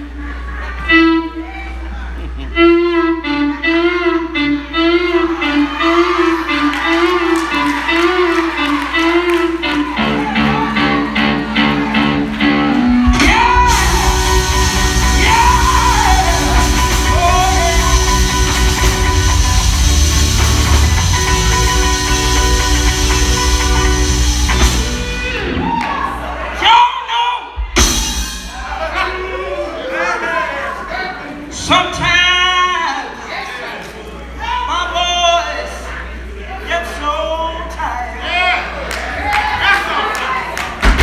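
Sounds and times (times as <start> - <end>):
bass guitar: 0.0 - 26.6, 27.6 - 29.8
gospel band playing: 0.0 - 33.8, 38.4 - 41.0
drums: 5.3 - 32.4, 39.0 - 41.0
person singing: 12.6 - 23.7.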